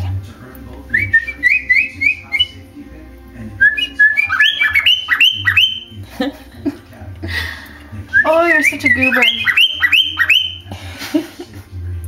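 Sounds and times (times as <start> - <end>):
pet bird whistling: 0.9 - 2.6, 3.6 - 6.0, 8.1 - 10.7.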